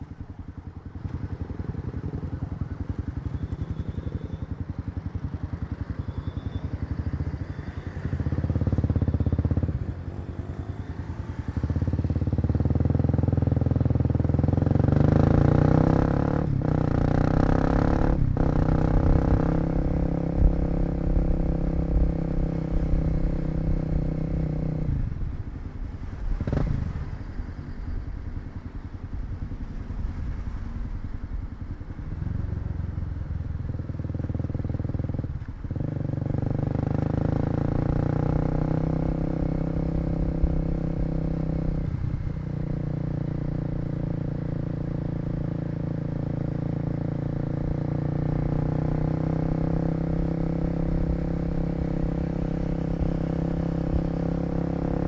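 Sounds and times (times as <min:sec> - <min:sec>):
motorcycle engine running: 0:00.0 - 0:55.0.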